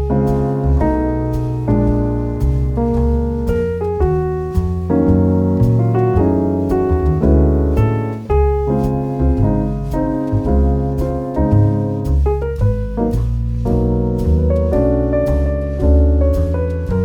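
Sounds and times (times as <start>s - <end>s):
deep bass line: 0.0s - 17.0s
piano music: 0.0s - 17.0s.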